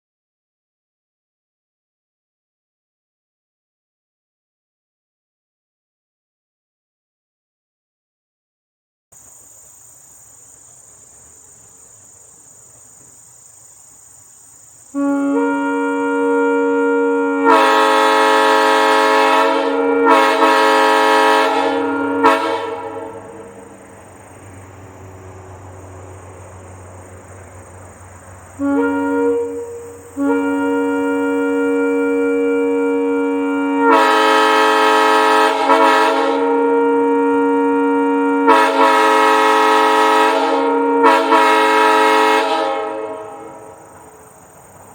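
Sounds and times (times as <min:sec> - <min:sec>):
locomotive air horn blasts: 0:14.9 - 0:27.1, 0:27.8 - 0:44.2.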